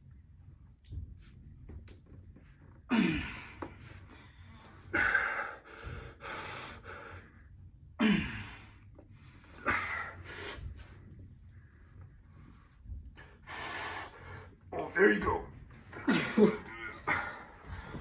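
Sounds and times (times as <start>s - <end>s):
heavy strained breathing: 2.9s - 7.4s, 8.0s - 11.1s, 13.1s - 18.0s.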